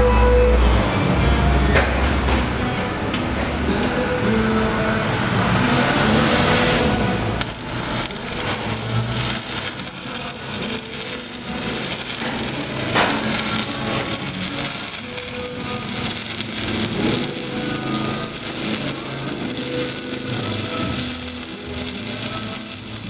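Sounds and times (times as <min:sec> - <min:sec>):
welding arc crackling: 0:03.7 - 0:23.0
loud welding crack: 0:04.9 - 0:23.0.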